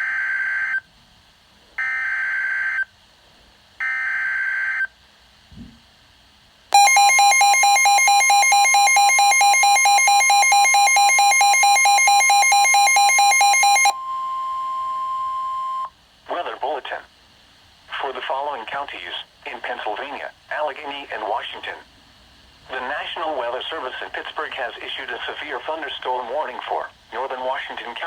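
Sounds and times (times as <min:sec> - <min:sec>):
pulsing two-tone alarm: 0:06.8 - 0:15.9.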